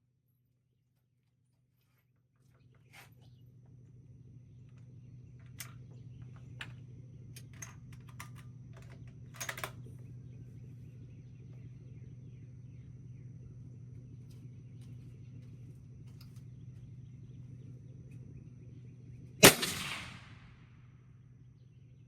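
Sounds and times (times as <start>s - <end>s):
steady low hum: 0.0s - 22.0s
sharp clicks and small knocks: 4.7s - 10.0s.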